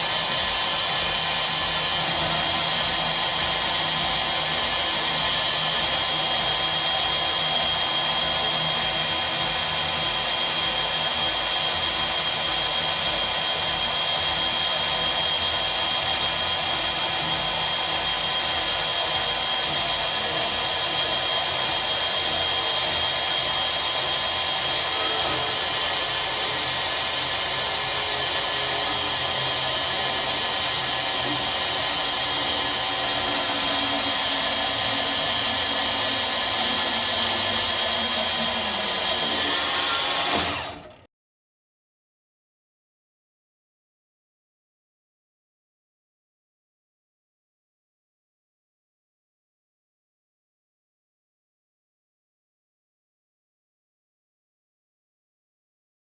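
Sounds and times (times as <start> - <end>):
bandsaw running: 0.0 - 41.1.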